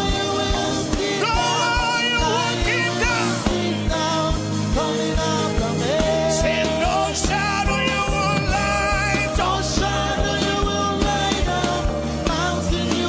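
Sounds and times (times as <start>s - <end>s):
gospel worship music: 0.0s - 13.0s
steady drum beat: 0.0s - 13.0s.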